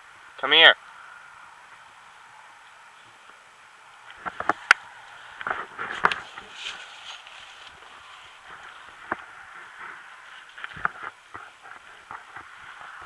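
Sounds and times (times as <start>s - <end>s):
faint steady hiss: 0.0s - 13.0s
short rustling: 4.2s - 13.0s.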